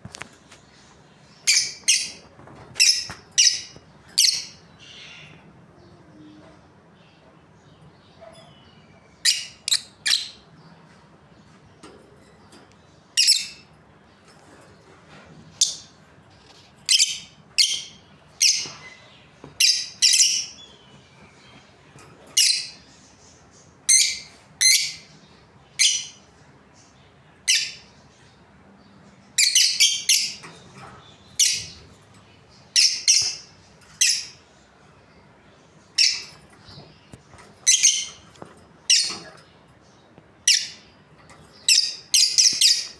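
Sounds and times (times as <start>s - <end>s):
budgerigars chirping: 1.4s - 5.4s, 29.4s - 30.6s, 31.2s - 34.5s, 36.0s - 39.4s, 40.4s - 40.9s, 41.5s - 42.9s.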